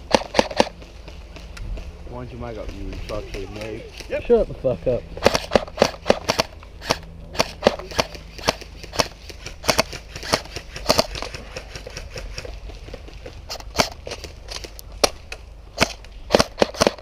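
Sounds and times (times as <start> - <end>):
airsoft gun shots: 0.0 - 0.7, 5.2 - 12.4, 13.5 - 14.3, 15.8 - 17.0.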